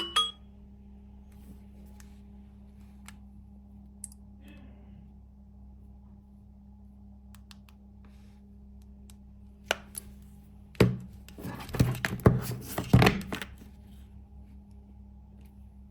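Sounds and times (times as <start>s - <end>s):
knocks taps and scraping: 10.8s - 13.6s.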